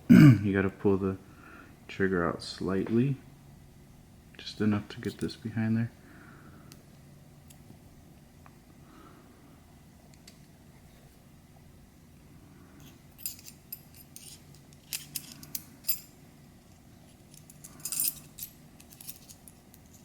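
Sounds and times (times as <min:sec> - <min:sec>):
faint low hum: 0:00.0 - 0:20.0
small metal parts clicking: 0:12.8 - 0:16.1, 0:16.7 - 0:20.0.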